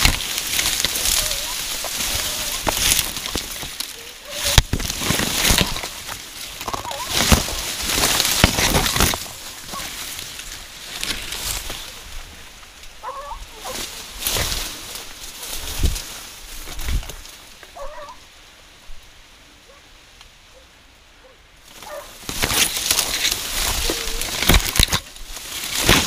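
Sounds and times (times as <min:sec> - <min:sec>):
stalks and dry leaves crashing: 0:00.0 - 0:18.4, 0:21.6 - 0:26.0
faint animal calls: 0:00.9 - 0:04.7, 0:13.0 - 0:14.1, 0:17.7 - 0:18.2.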